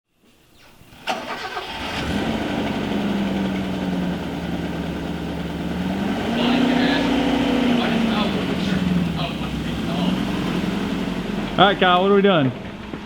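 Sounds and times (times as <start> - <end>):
car engine starting and idling: 0.5 - 13.0.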